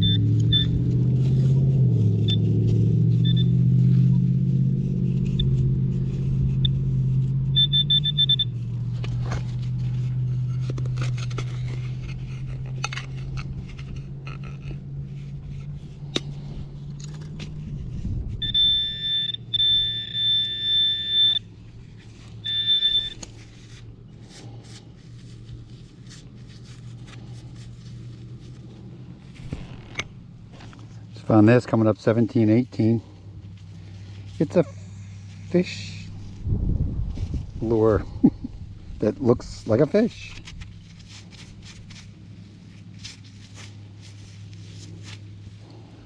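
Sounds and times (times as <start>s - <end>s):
metal detector tones: 0.0s - 1.0s, 2.2s - 3.7s, 5.1s - 17.6s, 18.3s - 24.4s
low engine hum: 0.0s - 46.0s
digging clicks and scrapes: 0.4s - 32.2s.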